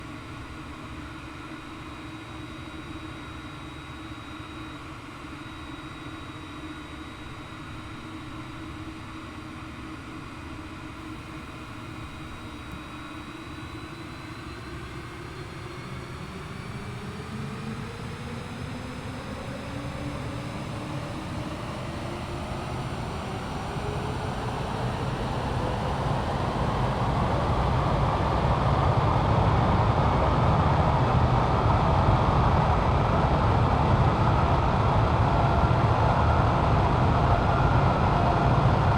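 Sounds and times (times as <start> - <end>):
jet engines spooling up: 11.2 - 38.9.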